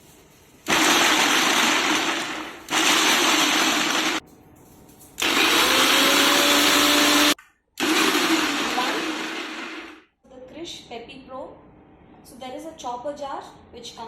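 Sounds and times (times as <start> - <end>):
mixer grinder motor whirring: 0.7 - 4.2, 5.2 - 10.0.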